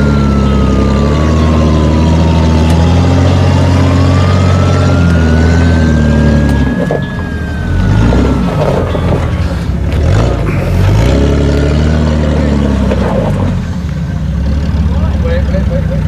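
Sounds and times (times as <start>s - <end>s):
thin whine sliding in pitch: 0.0s - 11.2s
truck engine running: 0.0s - 16.0s.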